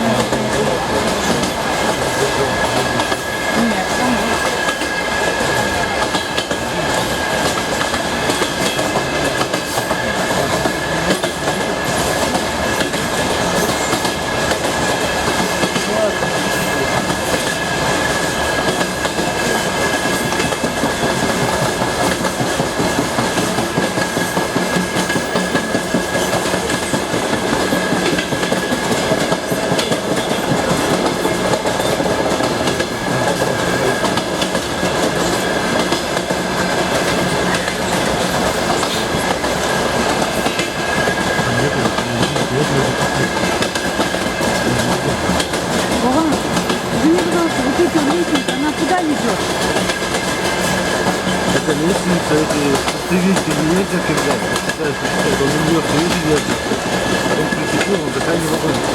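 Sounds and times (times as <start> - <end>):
train rumble: 0.0 - 58.9
train wheels clacking on rails: 0.0 - 58.9.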